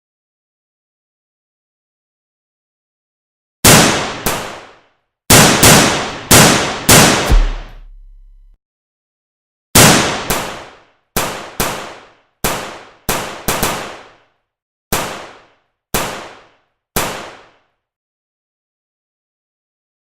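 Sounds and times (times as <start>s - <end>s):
sharp gunshot-like bangs: 3.6s - 8.6s, 9.8s - 14.2s, 14.9s - 17.6s.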